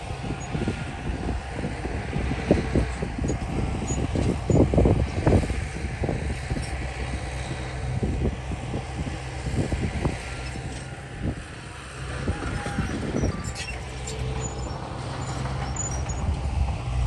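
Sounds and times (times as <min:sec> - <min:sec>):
diesel engine drone: 0:00.0 - 0:17.0
heavy machinery clanks: 0:12.0 - 0:17.0.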